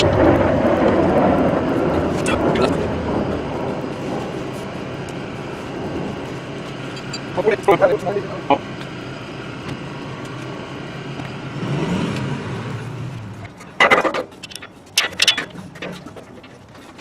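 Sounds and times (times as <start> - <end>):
passing vehicle hum: 0.0 - 17.0
metal tools clinking: 13.5 - 16.7.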